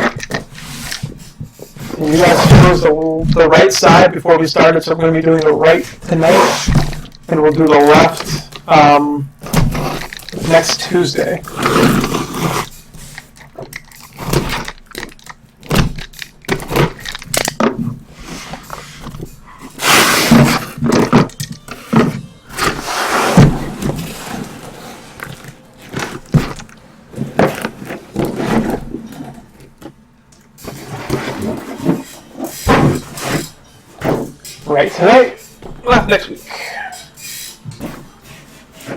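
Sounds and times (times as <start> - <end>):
packaging rustling: 5.2 - 30.0
cardboard knocks and scrapes: 21.9 - 30.0, 30.6 - 34.4.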